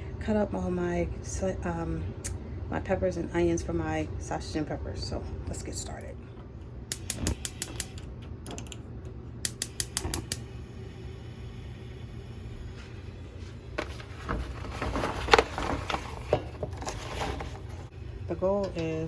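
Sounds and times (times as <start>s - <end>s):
steady low hum: 0.0s - 19.0s
sharp clicks: 6.9s - 8.8s, 9.4s - 10.4s.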